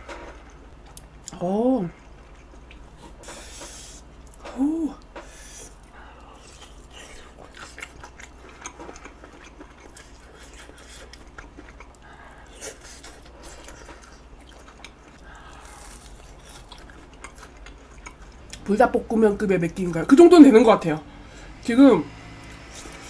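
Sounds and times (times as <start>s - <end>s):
person chewing food: 0.2s - 18.6s, 22.4s - 23.0s
breathy exhale: 15.2s - 15.8s.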